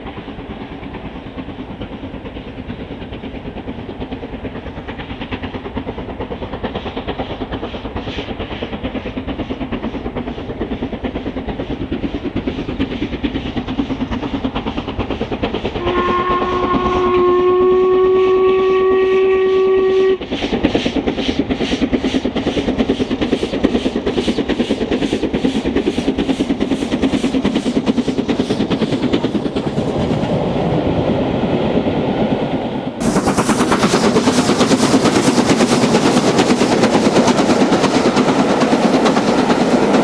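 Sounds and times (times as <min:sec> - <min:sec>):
steam locomotive exhaust beats: 0:00.0 - 0:40.0
steam locomotive chime whistle: 0:15.8 - 0:20.2.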